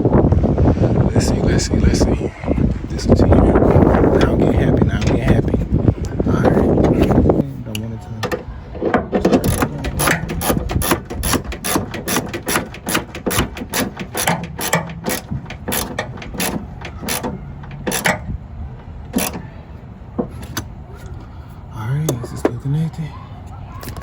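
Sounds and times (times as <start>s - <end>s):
socket ratchet clicking: 9.4s - 18.2s, 19.2s - 19.4s.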